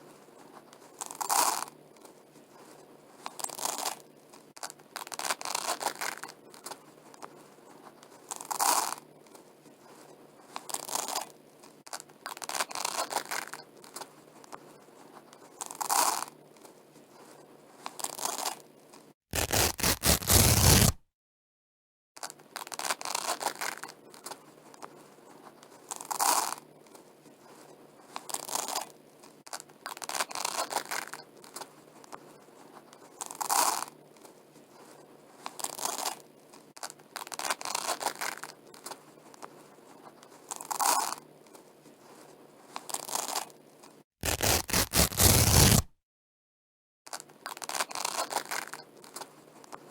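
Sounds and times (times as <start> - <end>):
velcro ripping apart: 19.3 - 21.0, 44.2 - 45.9, 47.5 - 48.8.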